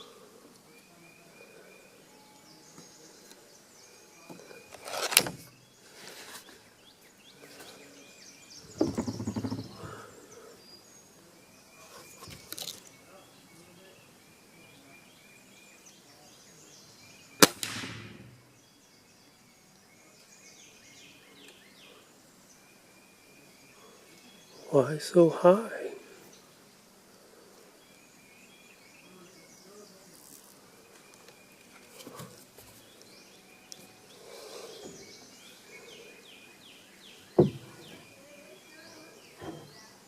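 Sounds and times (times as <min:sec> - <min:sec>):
birds chirping: 0:00.0 - 0:40.0
dull clunking: 0:08.7 - 0:10.1, 0:37.3 - 0:38.1, 0:39.4 - 0:39.8
pellet rifle shots: 0:17.4 - 0:18.4.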